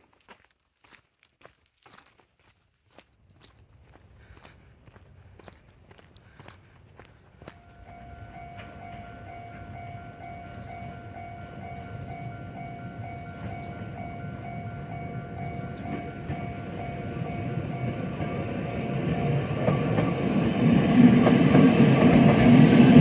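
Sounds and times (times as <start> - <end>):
electric train rumbling: 6.8 - 23.0
level crossing alarm ringing: 7.6 - 19.8.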